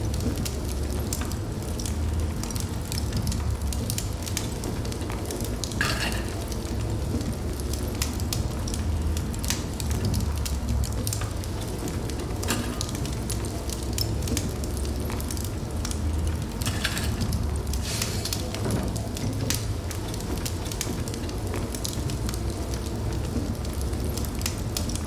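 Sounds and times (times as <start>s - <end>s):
wood fire crackling and popping: 0.0s - 25.0s
fire hissing flares: 11.1s - 20.1s.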